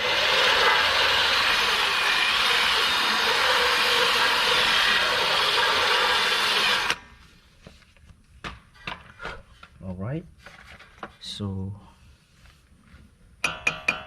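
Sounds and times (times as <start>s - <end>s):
handheld power tool running: 0.0s - 7.0s.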